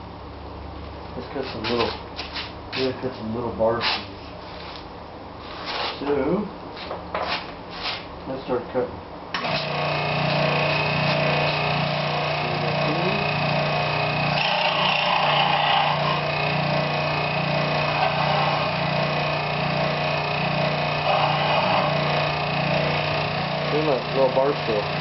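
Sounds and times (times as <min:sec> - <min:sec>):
electric power saw cutting wood: 0:09.4 - 0:25.0.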